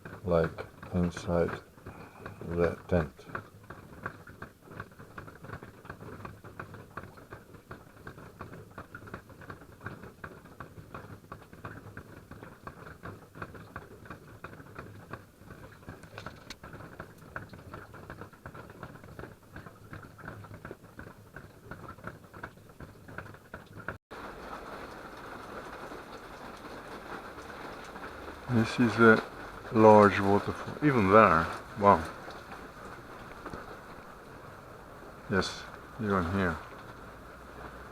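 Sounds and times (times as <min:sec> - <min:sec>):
water drops pattering on a tent: 0:00.0 - 0:37.9
rush of falling water: 0:24.2 - 0:37.9.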